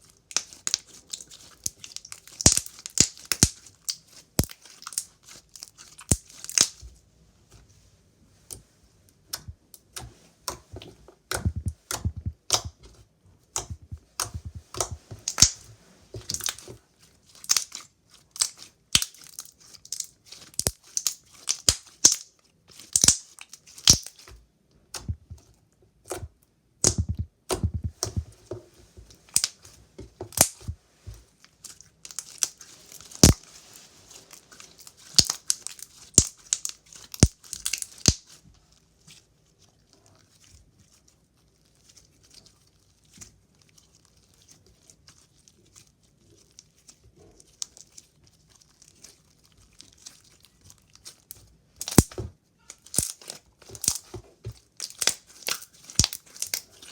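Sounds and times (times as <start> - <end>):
sticky slime pops and crackles: 0.3 - 5.1, 6.0 - 6.8, 9.3 - 12.9, 13.6 - 15.6, 16.2 - 16.7, 17.4 - 25.5, 26.1 - 28.4, 30.3 - 30.8, 32.1 - 33.4, 35.0 - 38.4, 51.8 - 52.2, 52.8 - 56.6
soft low squishing presses: 8.4 - 16.7, 24.9 - 36.6.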